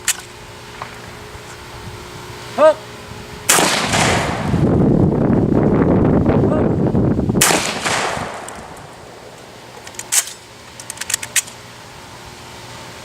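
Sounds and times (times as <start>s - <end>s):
metallic clicks of gun action: 0.0s - 0.3s, 9.8s - 11.6s
shotgun shot: 3.5s - 4.5s, 7.4s - 8.8s.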